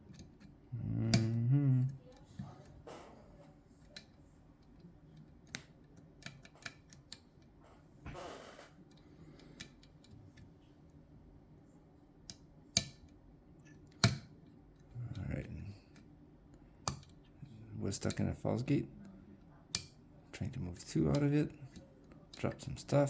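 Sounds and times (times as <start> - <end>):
lock pick metallic clicks: 19.7 - 20.0.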